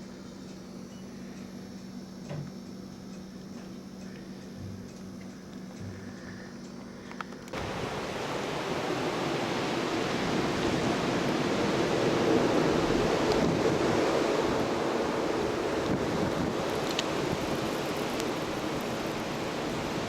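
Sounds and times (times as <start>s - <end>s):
blizzard wind rushing: 7.5s - 20.0s.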